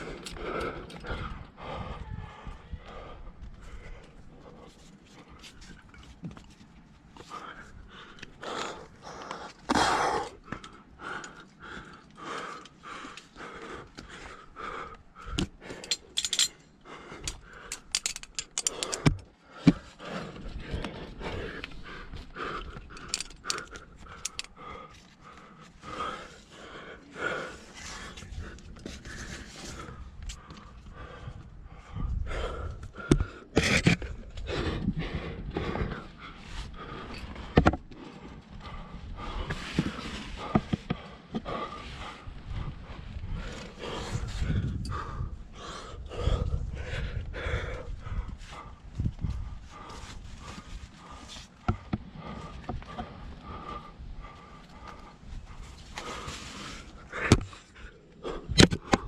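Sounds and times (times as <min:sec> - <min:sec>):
climber breathing hard: 0:00.0 - 0:59.0
gear clicking and scraping: 0:15.7 - 0:16.6, 0:17.2 - 0:20.9, 0:22.8 - 0:25.2.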